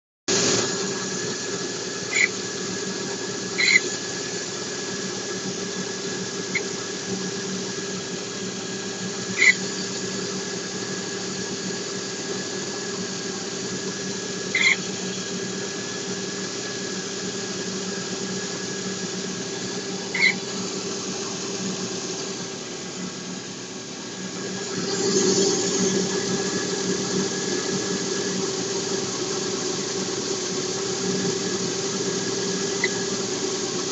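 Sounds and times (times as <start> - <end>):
car engine whine: 0.3 - 33.9
short sharp squeaks: 2.1 - 2.4, 3.6 - 4.0, 9.3 - 9.8, 14.5 - 14.9, 20.1 - 20.5, 32.7 - 33.0.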